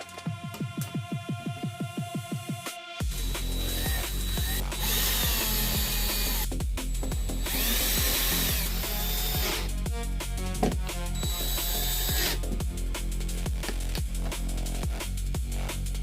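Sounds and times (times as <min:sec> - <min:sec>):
drum and bass music: 0:00.0 - 0:16.0
power screwdriver running: 0:03.1 - 0:06.5, 0:07.1 - 0:09.7, 0:11.2 - 0:12.4.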